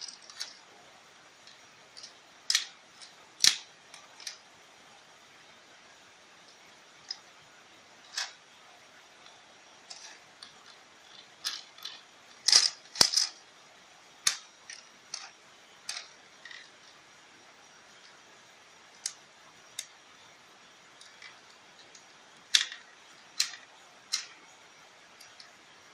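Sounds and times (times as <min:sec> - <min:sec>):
small hard objects clicking: 0:00.0 - 0:00.6, 0:01.4 - 0:04.4, 0:08.0 - 0:08.4, 0:09.2 - 0:13.4, 0:14.2 - 0:17.0, 0:21.0 - 0:24.4
faint steady hiss: 0:00.0 - 0:25.9.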